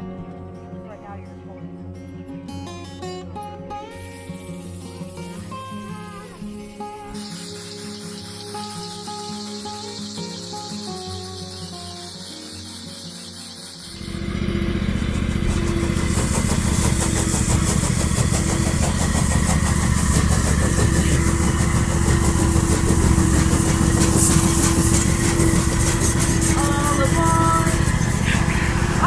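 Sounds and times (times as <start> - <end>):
loud engine running: 13.3 - 29.0.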